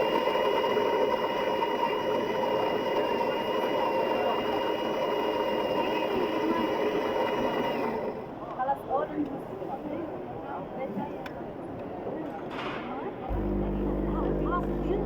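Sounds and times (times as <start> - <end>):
coffee machine whirring: 0.0 - 8.3, 13.3 - 15.0.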